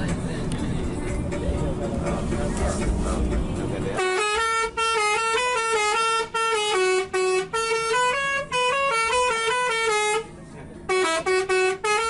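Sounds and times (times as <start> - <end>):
melodic bus horn: 3.8 - 12.0.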